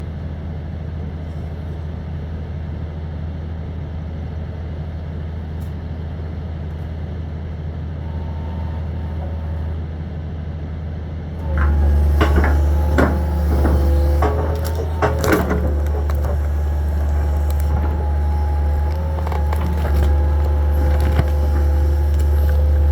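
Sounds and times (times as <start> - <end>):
excavator diesel engine: 7.3 - 22.9
wood cracking and snapping: 11.4 - 22.9.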